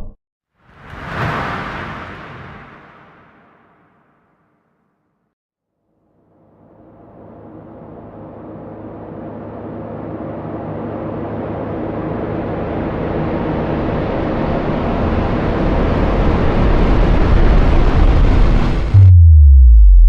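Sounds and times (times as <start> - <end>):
cinematic riser: 18.7 - 20.0.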